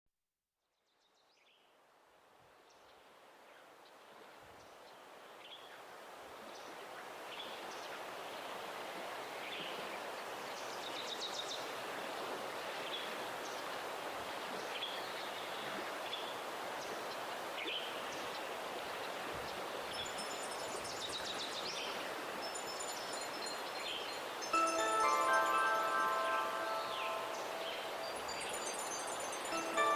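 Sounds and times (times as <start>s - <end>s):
wind in leaves: 2.3s - 29.9s
high chime-like tones: 24.5s - 29.9s.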